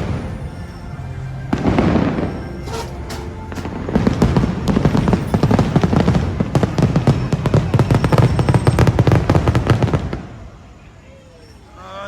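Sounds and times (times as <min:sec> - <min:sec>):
firework bursts and booms: 0:01.5 - 0:10.8.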